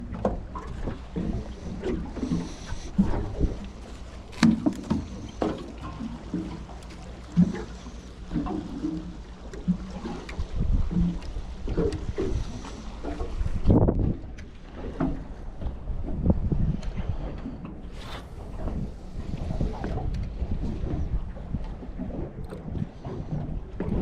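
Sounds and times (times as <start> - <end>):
water slapping against boat hull: 0.0 - 24.0
wind rumble: 15.4 - 21.9.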